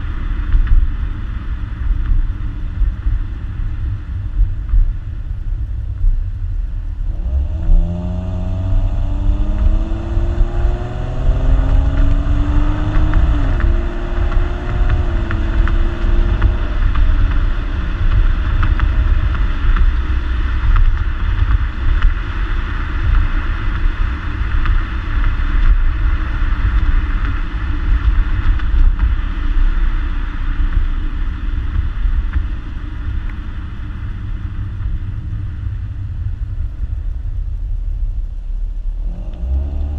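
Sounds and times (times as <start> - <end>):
low road rumble: 0.0 - 39.9
car engine accelerating: 6.9 - 39.9.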